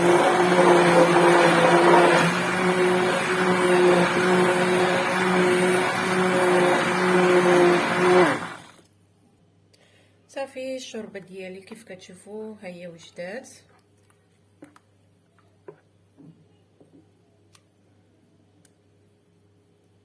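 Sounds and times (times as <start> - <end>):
blender motor whirring: 0.0 - 8.8.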